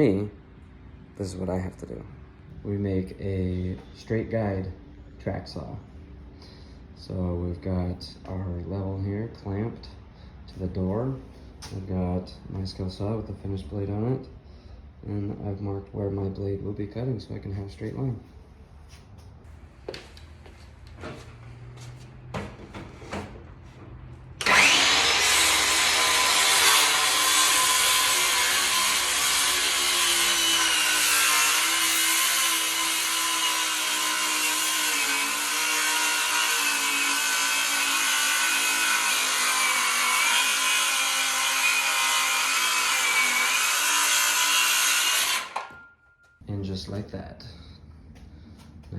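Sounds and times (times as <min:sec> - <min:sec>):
circular saw cutting wood: 0:24.1 - 0:45.9.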